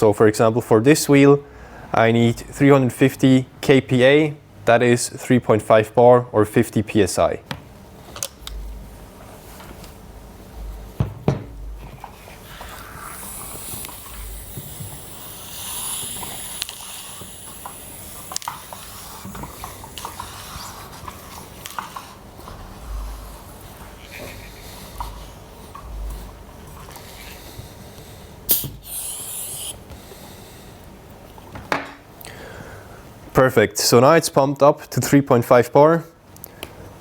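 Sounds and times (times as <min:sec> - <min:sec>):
air hissing: 0:12.4 - 0:20.9, 0:28.4 - 0:30.5.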